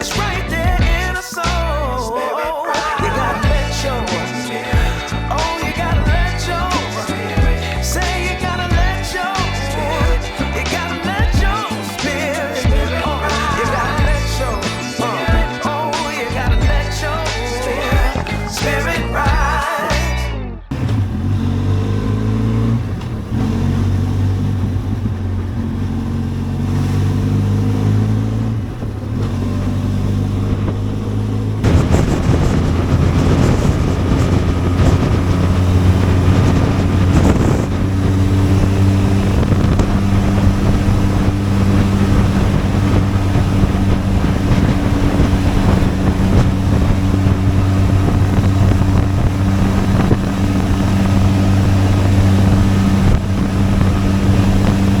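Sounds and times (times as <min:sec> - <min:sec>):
motorcycle engine running: 0:00.0 - 0:01.3, 0:03.0 - 0:15.7, 0:16.3 - 0:19.6, 0:20.7 - 0:55.0.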